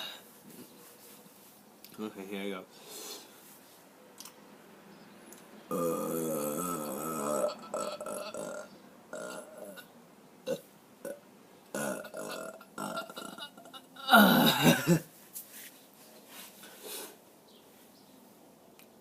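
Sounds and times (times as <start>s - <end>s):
person burping: 5.7s - 15.1s.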